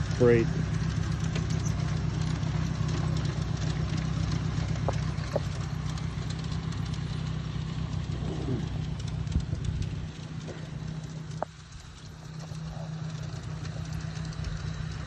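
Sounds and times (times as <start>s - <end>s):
wheels clicking over rail: 0.0s - 7.3s
model train motor hum: 0.0s - 15.0s.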